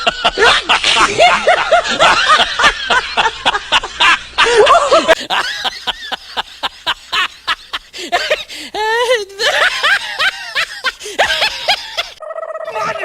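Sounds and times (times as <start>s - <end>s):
rhythmic laughter: 0.0s - 8.6s, 9.4s - 12.6s.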